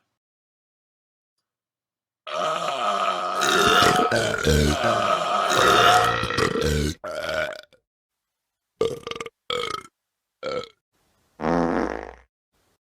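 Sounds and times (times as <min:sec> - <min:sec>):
person burping: 0:02.3 - 0:07.8, 0:08.8 - 0:10.8.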